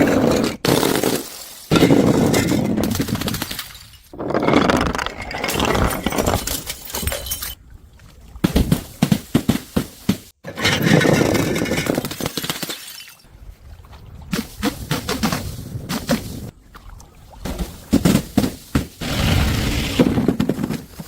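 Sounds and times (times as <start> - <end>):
glass bottles smashing: 5.4 - 7.6, 12.1 - 13.2
glass shards clinking: 5.5 - 7.6.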